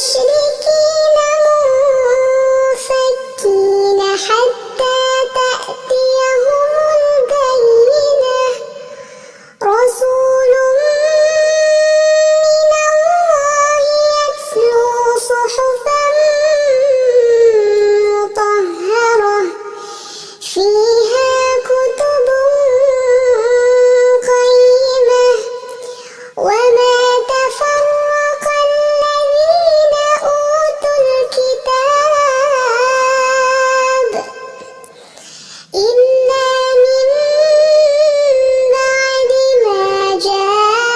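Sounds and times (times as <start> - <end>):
person chanting recitation: 0.0 - 8.8, 9.6 - 19.7, 20.5 - 34.9, 35.8 - 40.9.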